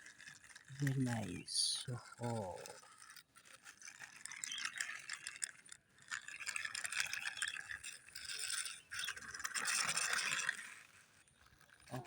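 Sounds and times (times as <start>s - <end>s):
plastic toy vehicle rattling: 0.0s - 12.0s.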